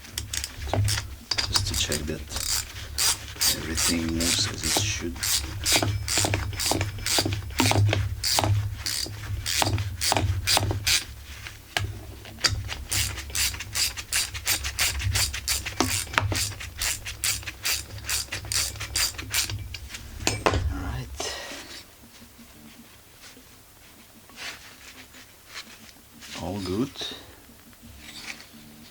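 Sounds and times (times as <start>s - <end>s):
ratchet wrench clicking: 0.2s - 11.1s, 12.4s - 19.8s.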